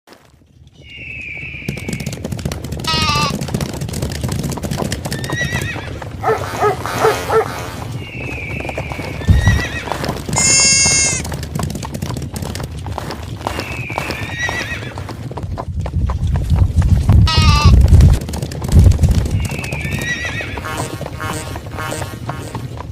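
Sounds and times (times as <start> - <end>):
galloping hoofbeats: 0.1 - 22.9
animal calls: 2.8 - 3.4, 5.2 - 11.2, 17.3 - 17.8.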